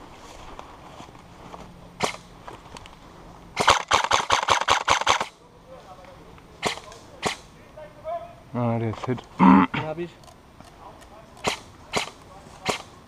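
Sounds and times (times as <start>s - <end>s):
airsoft gun shots: 2.0s - 2.2s, 3.6s - 5.3s, 6.6s - 7.5s, 11.4s - 12.9s.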